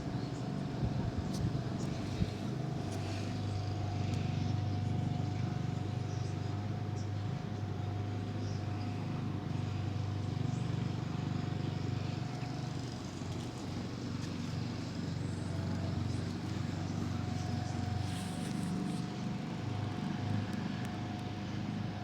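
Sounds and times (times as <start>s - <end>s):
road traffic rumble: 0.0s - 22.0s.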